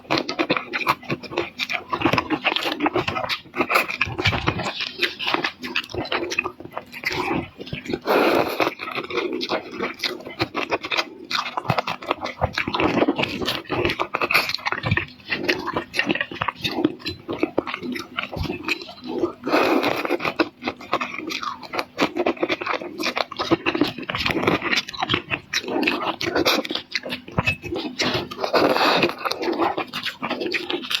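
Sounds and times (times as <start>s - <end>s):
person chewing and smacking: 0.0s - 31.0s.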